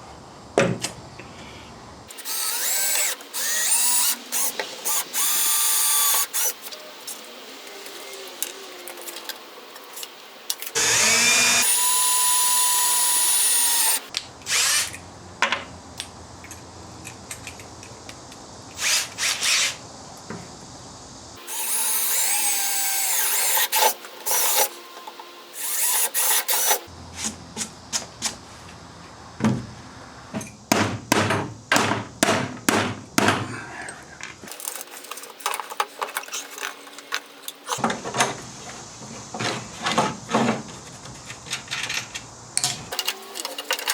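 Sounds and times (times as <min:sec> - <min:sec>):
power drill running: 0:02.1 - 0:08.9, 0:10.7 - 0:14.9, 0:21.4 - 0:26.9.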